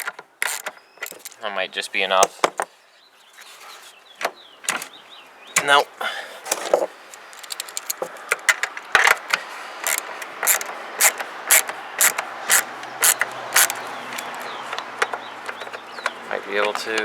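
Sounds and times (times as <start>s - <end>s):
socket wrench ratchet clicking: 0.0s - 1.4s, 7.2s - 8.4s, 9.8s - 14.5s.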